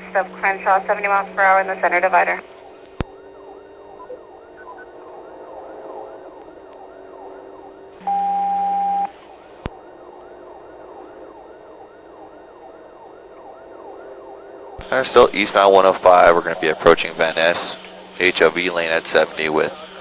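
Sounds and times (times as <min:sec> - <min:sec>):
police siren yelping: 0:00.0 - 0:20.0
steady beep tone: 0:00.5 - 0:05.0, 0:08.0 - 0:09.2.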